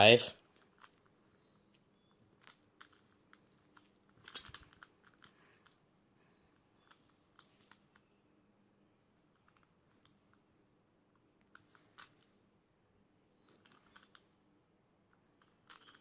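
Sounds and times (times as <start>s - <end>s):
plastic puzzle cube clicks: 1.7s - 5.8s, 13.4s - 14.4s, 15.1s - 16.0s.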